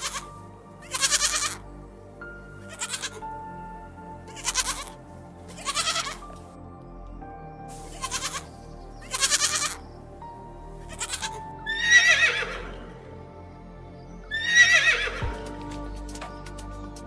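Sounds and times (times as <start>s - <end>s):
background music: 0.0s - 17.0s.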